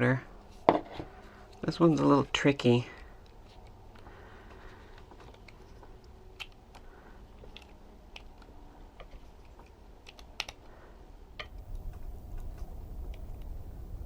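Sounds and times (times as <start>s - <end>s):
small plastic and metal parts clicking: 2.9s - 10.7s
low handling rumble: 11.4s - 14.0s.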